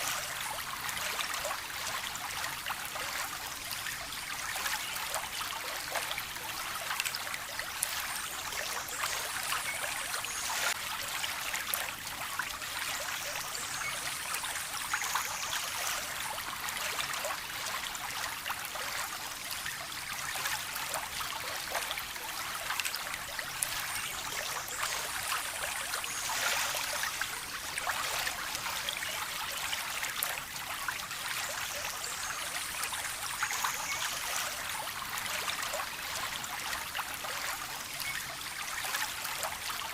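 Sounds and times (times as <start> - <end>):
stream trickling and splashing: 0.0 - 39.9.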